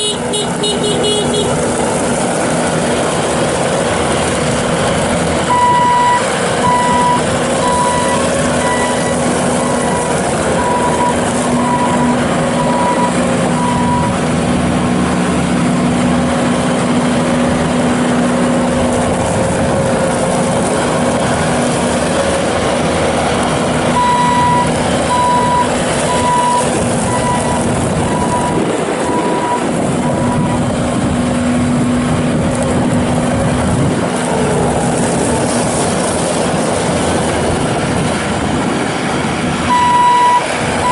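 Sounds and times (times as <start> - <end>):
diesel engine running: 0.0 - 40.9
backup alarm beeping: 5.5 - 14.1, 24.0 - 30.6, 39.7 - 40.9.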